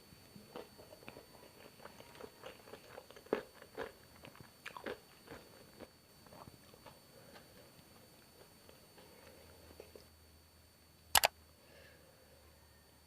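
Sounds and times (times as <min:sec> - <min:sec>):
person chewing crunchy food: 0:00.5 - 0:09.9.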